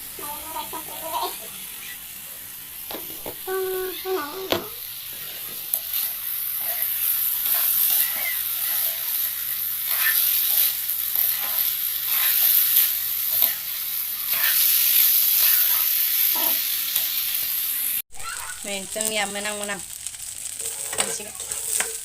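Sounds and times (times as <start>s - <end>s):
rice sizzling in a pan: 0.0s - 22.0s
spatula scraping a pan: 5.1s - 17.2s.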